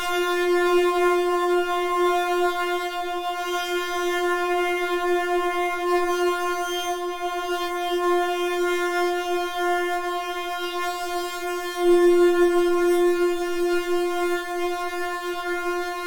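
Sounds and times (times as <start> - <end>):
synthesizer holding a note: 11.7 - 15.0.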